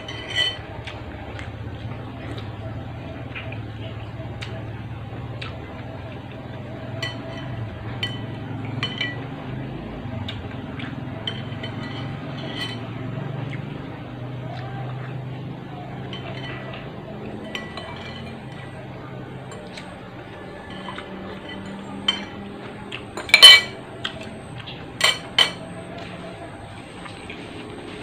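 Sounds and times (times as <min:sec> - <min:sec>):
steady low hum: 0:00.0 - 0:28.0
spoon clinking against bowl: 0:07.0 - 0:09.3, 0:11.2 - 0:12.9, 0:16.0 - 0:16.8, 0:17.4 - 0:18.7, 0:20.6 - 0:22.5, 0:23.2 - 0:24.2, 0:25.0 - 0:25.7.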